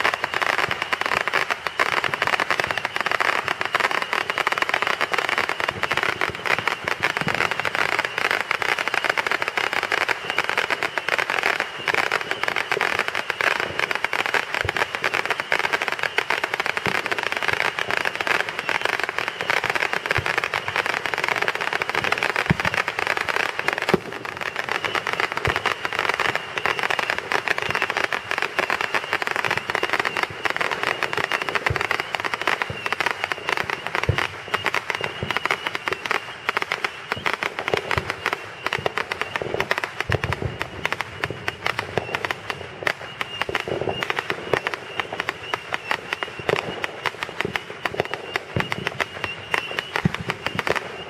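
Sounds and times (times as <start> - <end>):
fireworks crackling pops: 0.0 - 51.0
heavy firework bangs: 4.6 - 51.0.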